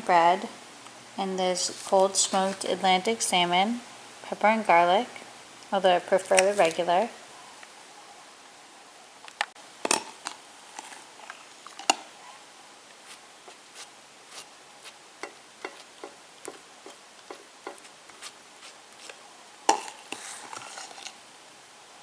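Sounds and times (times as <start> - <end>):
knife tapping on plate: 15.2 - 17.9.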